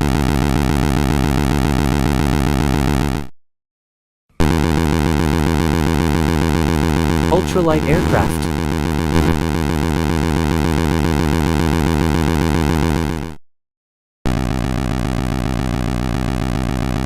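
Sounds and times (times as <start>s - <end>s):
synthesizer music: 7.3s - 8.6s.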